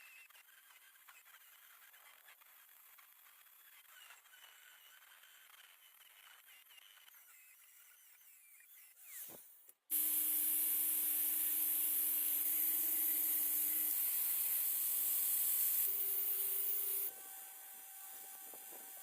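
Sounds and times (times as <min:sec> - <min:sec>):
power sander running: 0:09.9 - 0:19.0.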